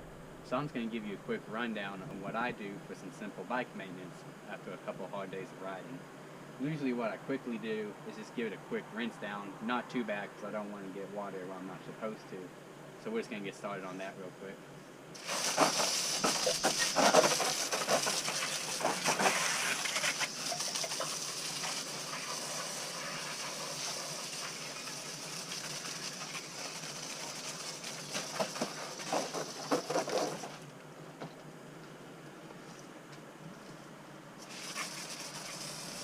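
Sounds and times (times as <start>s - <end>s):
hose spraying water: 15.1s - 30.7s, 34.4s - 36.0s.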